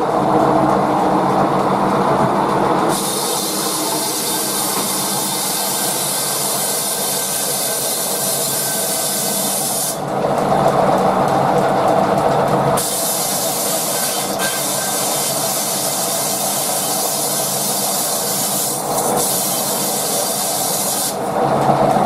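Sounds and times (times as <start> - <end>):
bandsaw running: 2.8 - 10.1, 12.8 - 21.2
loud high hiss: 2.9 - 10.0, 12.8 - 21.2.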